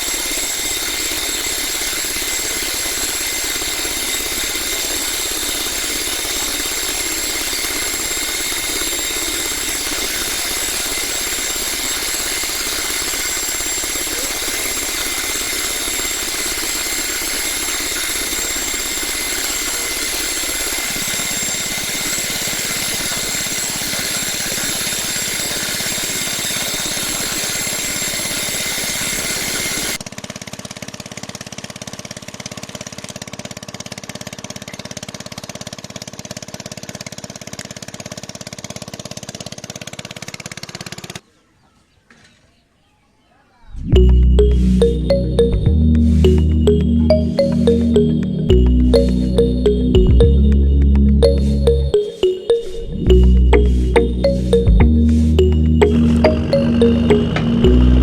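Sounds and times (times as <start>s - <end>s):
small motors whining: 0.0s - 30.0s.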